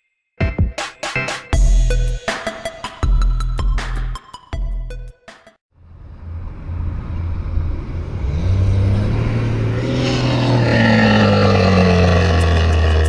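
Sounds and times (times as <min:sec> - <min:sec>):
diesel truck engine revving: 0:06.0 - 0:13.0.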